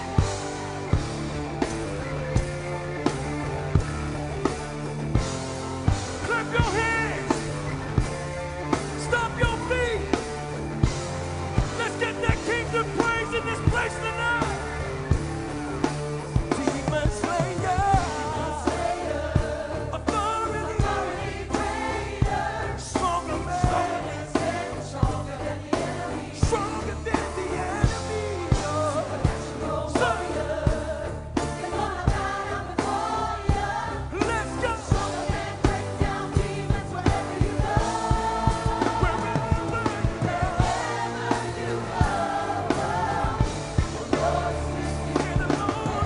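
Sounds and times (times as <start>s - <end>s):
band playing: 0.0s - 46.0s
bass line: 0.0s - 46.0s
voices singing gospel: 0.0s - 46.0s
drum hits: 31.4s - 46.0s.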